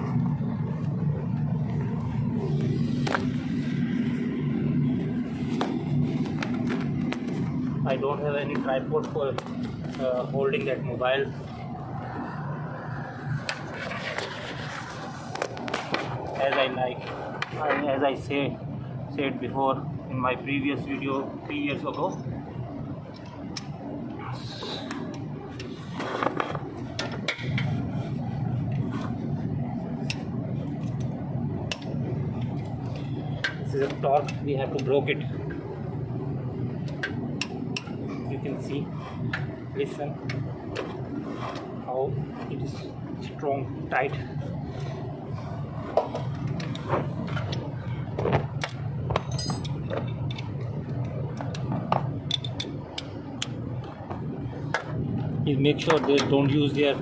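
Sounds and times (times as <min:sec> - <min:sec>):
steady low hum: 0:00.0 - 0:57.0
spanner clicking on bolts: 0:48.6 - 0:53.1.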